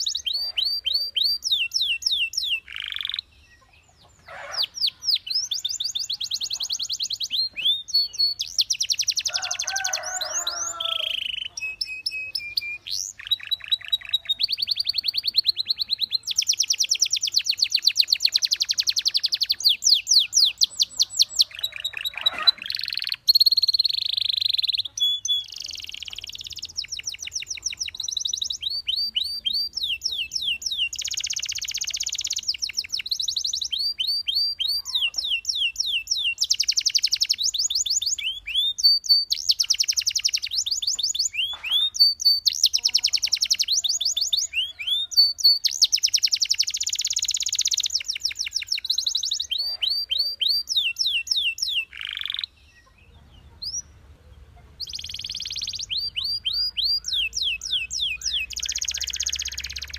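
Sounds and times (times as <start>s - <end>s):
canary singing: 0.0s - 59.9s.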